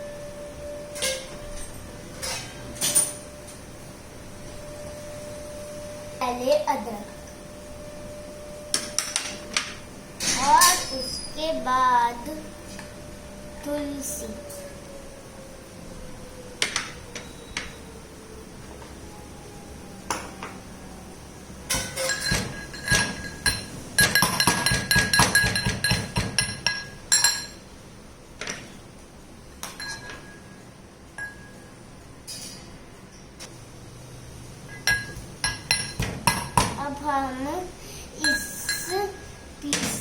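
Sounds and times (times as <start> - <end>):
pestle pounding in a mortar: 22.3 - 26.9.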